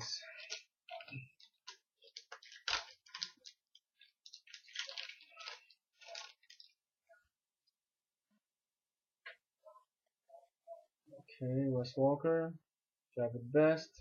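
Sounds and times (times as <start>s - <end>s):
trading cards rustling: 0.0s - 6.8s.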